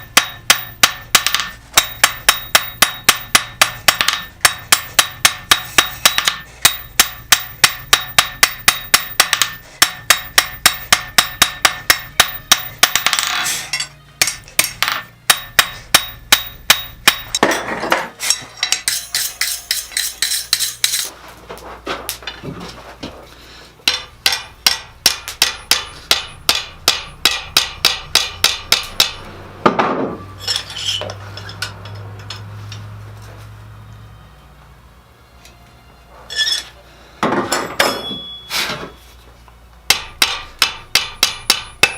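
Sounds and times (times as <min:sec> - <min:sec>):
hammer ringing on anvil: 0:00.0 - 0:17.5, 0:18.3 - 0:21.1, 0:37.8 - 0:38.5, 0:39.9 - 0:41.9.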